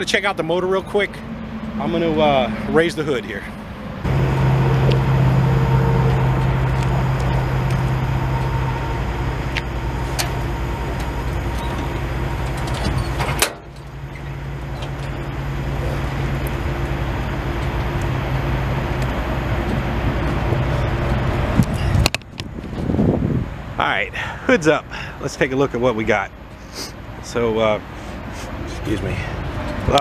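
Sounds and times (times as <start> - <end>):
truck engine idling: 0.0 - 22.6
truck hood being opened: 9.5 - 15.2.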